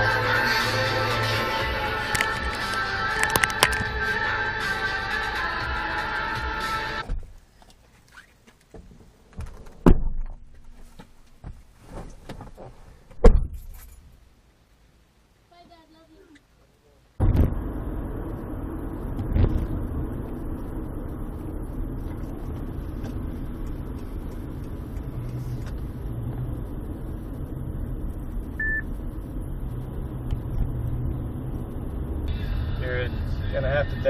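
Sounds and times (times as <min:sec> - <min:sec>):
car road and engine rumble: 0:00.0 - 0:34.0
thump: 0:08.7 - 0:14.0
short high beep: 0:28.6 - 0:28.9.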